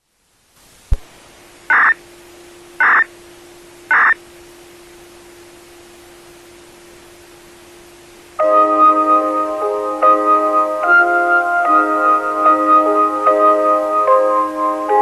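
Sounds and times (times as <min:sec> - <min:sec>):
radio static hiss: 0:00.0 - 0:08.4
steady low hum: 0:00.0 - 0:10.6
loud static bursts: 0:00.5 - 0:02.1, 0:02.7 - 0:04.3.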